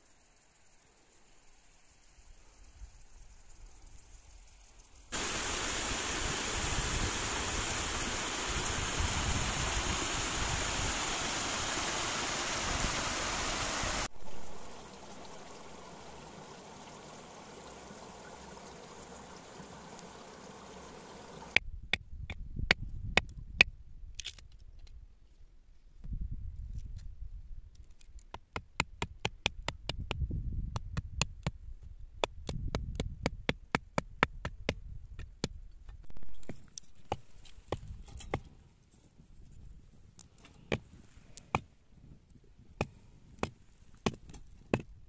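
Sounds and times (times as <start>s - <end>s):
rushing water hiss: 0.0s - 21.6s, 36.1s - 38.0s.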